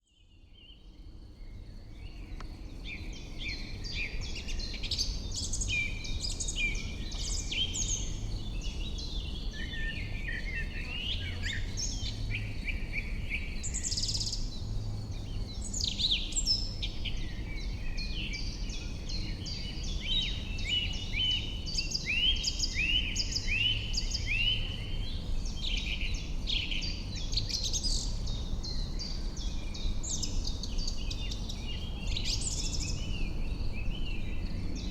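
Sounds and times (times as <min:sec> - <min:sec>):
songbirds singing and calling: 0:00.0 - 0:34.9.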